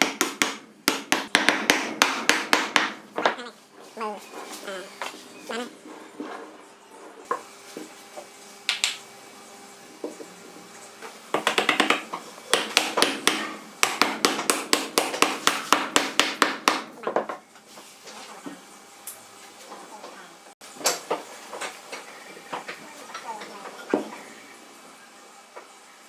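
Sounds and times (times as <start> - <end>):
hammer tapping on wood: 0.0 - 3.3, 11.3 - 17.2.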